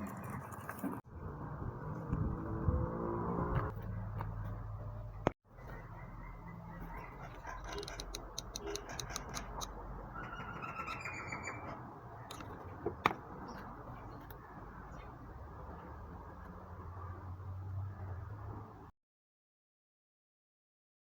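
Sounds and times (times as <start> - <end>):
bird chirping trill: 5.6 - 12.5
small clicks: 7.6 - 9.8.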